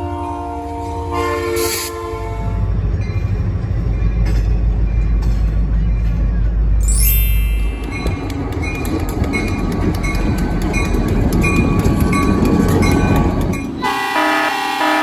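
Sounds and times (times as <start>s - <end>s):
locomotive horn chord: 0.0s - 2.7s, 13.8s - 15.0s
train wheels clattering over rail joints: 3.0s - 6.8s, 7.7s - 13.9s.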